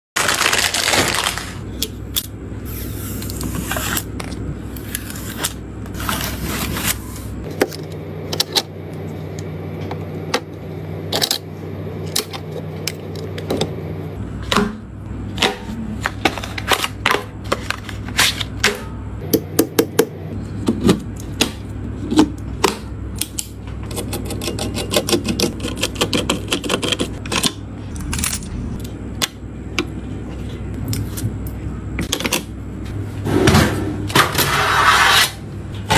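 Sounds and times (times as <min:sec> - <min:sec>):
steady low hum: 0:01.4 - 0:35.9
plastic and cardboard scrapes: 0:34.3 - 0:35.4.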